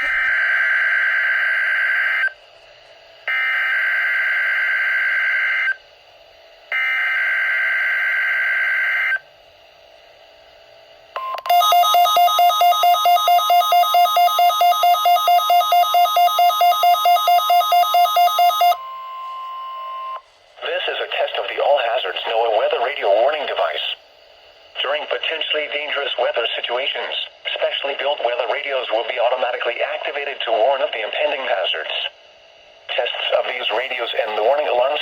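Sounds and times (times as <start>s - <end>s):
steady warning alarm tone: 0.0s - 2.4s, 6.7s - 9.2s, 11.2s - 20.2s.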